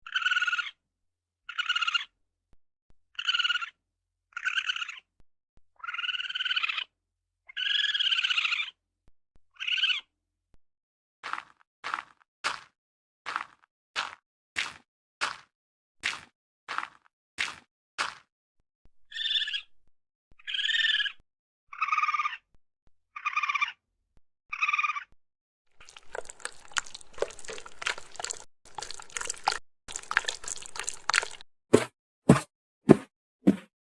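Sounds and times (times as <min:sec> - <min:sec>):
raccoon calls: 0:00.0 - 0:00.8, 0:01.5 - 0:02.1, 0:03.1 - 0:05.1, 0:05.8 - 0:06.9, 0:07.5 - 0:08.8, 0:09.6 - 0:10.1, 0:19.1 - 0:19.7, 0:20.4 - 0:22.5, 0:23.1 - 0:23.8, 0:24.5 - 0:25.1
buzzy pitched animal calls: 0:23.1 - 0:23.8
crackling rustling noise: 0:25.8 - 0:31.4.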